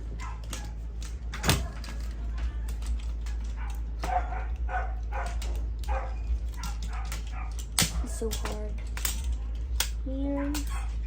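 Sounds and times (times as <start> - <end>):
low hum: 0.0 - 11.0
dog barking and yipping: 0.1 - 2.0, 3.3 - 8.6, 10.3 - 11.0.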